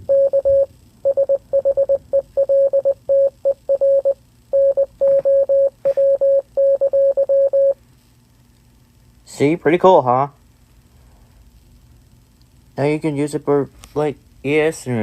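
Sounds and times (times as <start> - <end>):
morse code beeps: 0.0 - 7.8.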